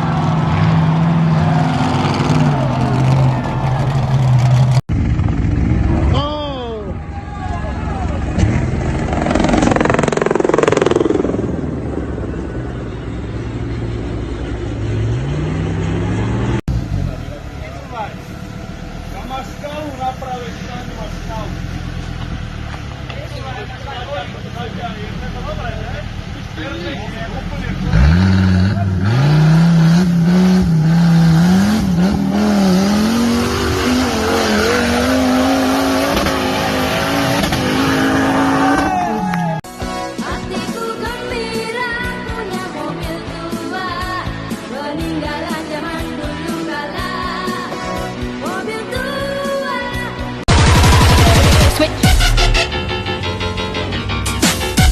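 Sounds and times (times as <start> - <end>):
off-road vehicle engine revving: 0.0 - 7.0, 7.7 - 39.6
vehicle engine revving hard: 27.6 - 38.9.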